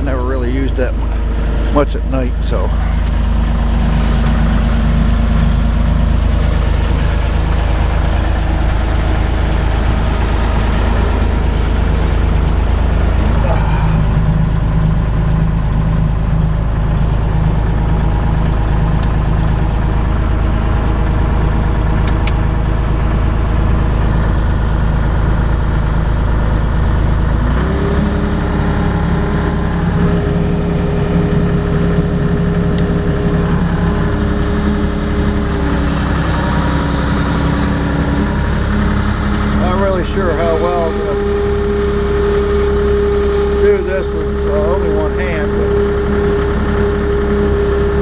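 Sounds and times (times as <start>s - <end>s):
diesel engine running: 0.0s - 48.0s
high steady tone: 27.4s - 48.0s.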